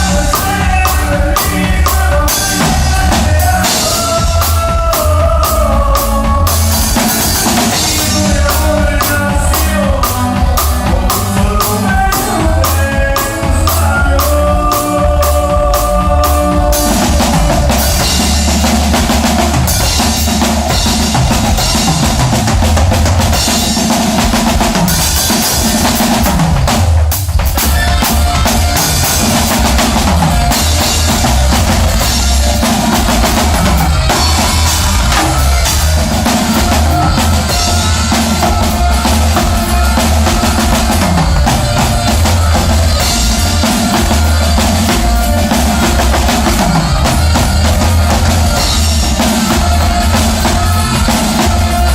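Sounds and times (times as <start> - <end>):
band playing a song: 0.0 - 51.9
bass: 0.0 - 51.9
drum kit: 0.0 - 51.9.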